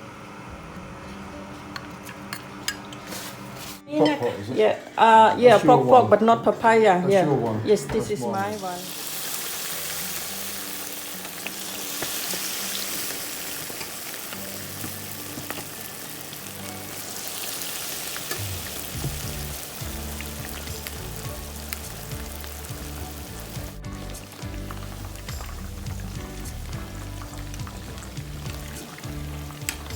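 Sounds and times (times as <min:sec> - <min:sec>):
background music: 0:00.4 - 0:29.9
food frying in hot oil: 0:08.5 - 0:29.9.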